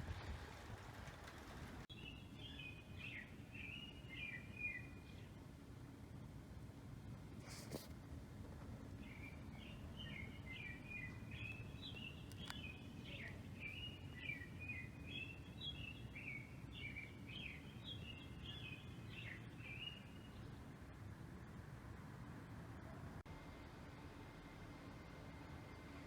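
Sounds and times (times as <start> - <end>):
low background rumble: 0.0 - 4.2
songbird chirping: 1.8 - 5.5, 8.9 - 20.7.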